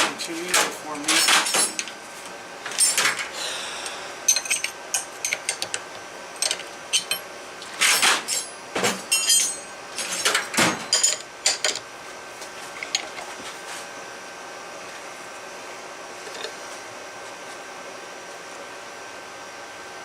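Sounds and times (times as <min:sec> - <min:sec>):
hand tools clinking on metal: 0:06.4 - 0:11.8.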